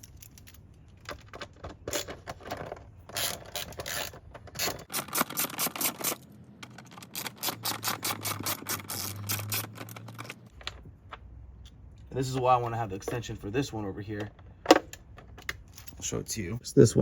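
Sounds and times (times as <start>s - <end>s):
tool scraping screws: 0.0s - 10.6s.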